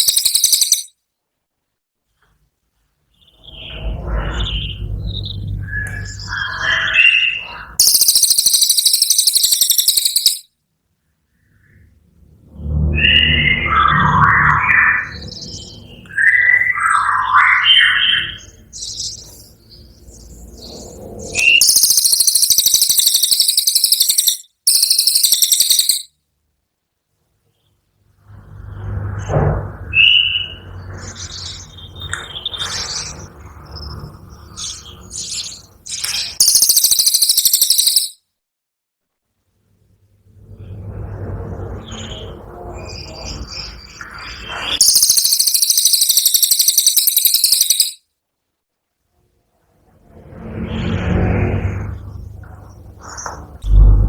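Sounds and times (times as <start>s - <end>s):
bird singing fast high trill: 0.0s - 0.9s, 4.4s - 10.5s, 21.4s - 26.1s, 36.2s - 38.2s, 44.8s - 48.0s
songbird chirping and trilling: 0.0s - 0.9s, 3.1s - 10.5s, 13.0s - 26.1s, 30.0s - 38.2s, 41.8s - 48.0s
low background rumble: 49.9s - 54.0s.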